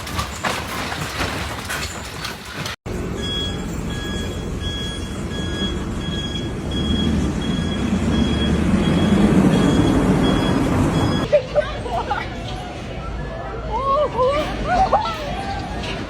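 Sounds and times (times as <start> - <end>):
low rumbling noise: 2.9 - 11.3.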